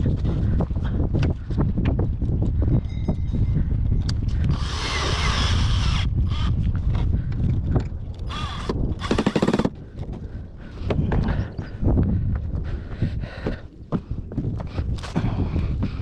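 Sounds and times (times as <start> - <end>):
wind on microphone: 0.0 - 16.0
power drill running: 4.5 - 6.5, 8.3 - 9.7.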